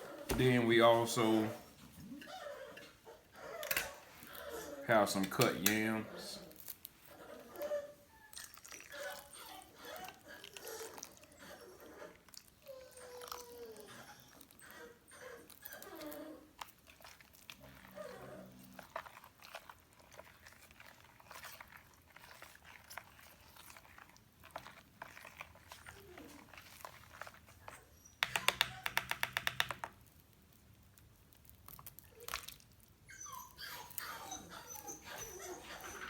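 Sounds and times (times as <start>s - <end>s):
puppies whimpering: 0.0s - 16.5s, 33.1s - 36.0s.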